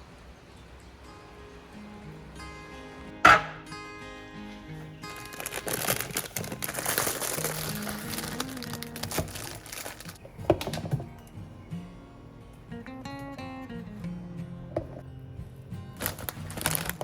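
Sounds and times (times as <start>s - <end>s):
light background music: 0.6s - 17.0s
sharp knocks: 3.2s - 3.8s.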